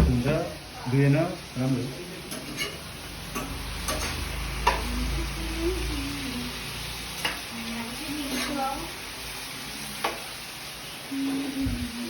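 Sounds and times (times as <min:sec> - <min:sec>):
sauce sizzling in a frying pan: 0:00.0 - 0:12.0
spoon clicking against pan: 0:03.3 - 0:04.9.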